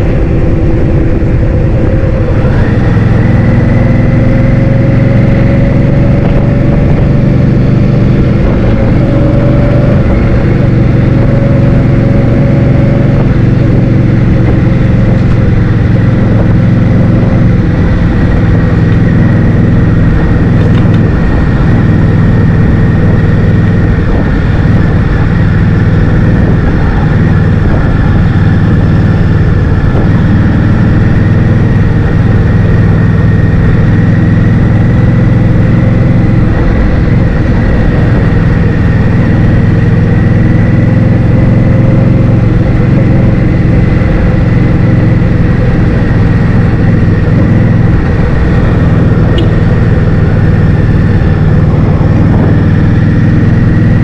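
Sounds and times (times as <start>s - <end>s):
thin steady whine: 0.0s - 4.5s
scooter engine hum: 0.0s - 54.0s
wind buffeting microphone: 0.0s - 54.0s.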